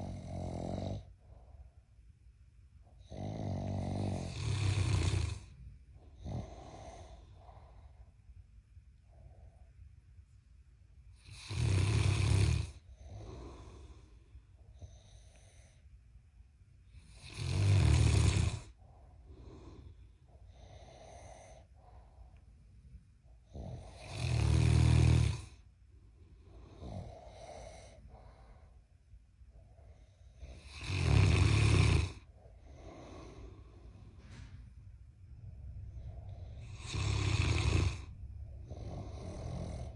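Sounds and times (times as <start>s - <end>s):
loud snoring: 0.0s - 1.1s, 3.0s - 5.5s, 6.2s - 7.3s, 11.2s - 13.8s, 17.0s - 18.8s, 23.5s - 25.6s, 30.4s - 33.5s, 36.0s - 39.9s
soft breathing: 1.0s - 3.0s, 5.3s - 10.6s, 12.7s - 16.1s, 18.6s - 24.0s, 25.4s - 30.7s, 32.0s - 39.9s.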